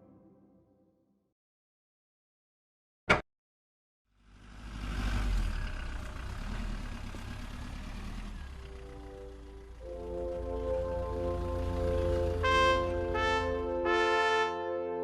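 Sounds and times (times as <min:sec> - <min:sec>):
music: 0:00.0 - 0:01.3, 0:08.7 - 0:15.0.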